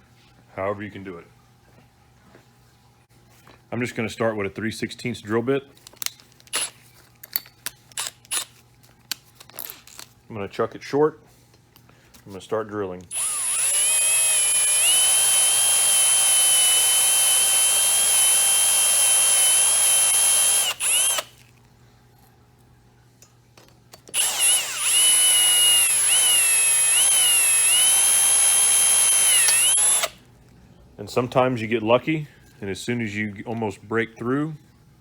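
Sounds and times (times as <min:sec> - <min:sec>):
electric drill whining: 0:06.5 - 0:06.7, 0:13.1 - 0:21.4, 0:24.1 - 0:30.2.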